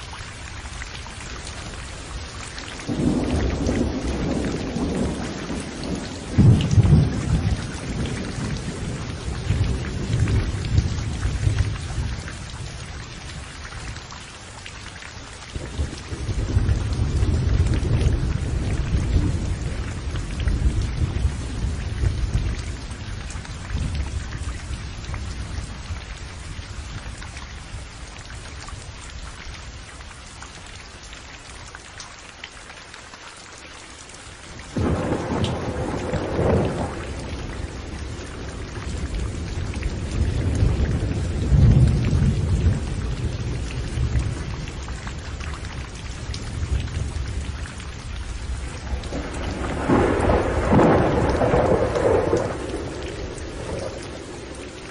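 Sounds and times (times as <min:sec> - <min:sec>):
steady rain: 0:00.0 - 0:54.9
rolling thunder: 0:02.8 - 0:12.6, 0:15.6 - 0:25.9, 0:34.7 - 0:54.9
sharp thunder clap: 0:02.9 - 0:11.8, 0:34.8 - 0:38.2, 0:48.9 - 0:54.5.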